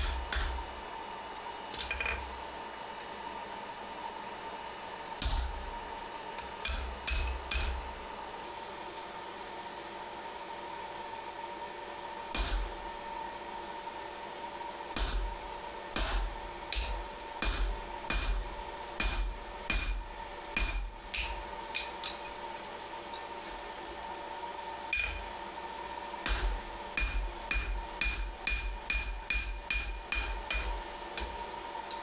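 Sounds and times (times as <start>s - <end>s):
hammer striking steel on anvil: 0.0s - 0.6s, 5.2s - 5.7s, 6.6s - 7.8s, 12.4s - 12.7s, 15.0s - 15.4s, 16.0s - 22.3s, 24.9s - 25.3s, 26.2s - 32.0s
steady fan hum: 0.0s - 32.0s.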